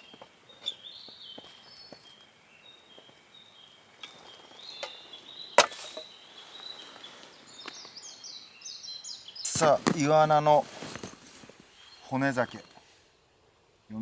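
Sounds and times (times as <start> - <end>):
campfire wood crackling: 9.4 - 13.2.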